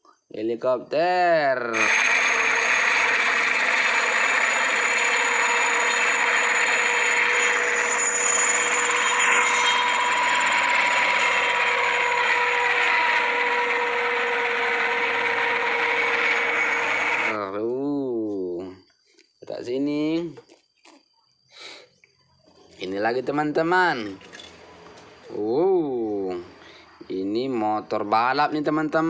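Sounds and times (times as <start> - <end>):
toy helicopter motor whirring: 1.7 - 17.4.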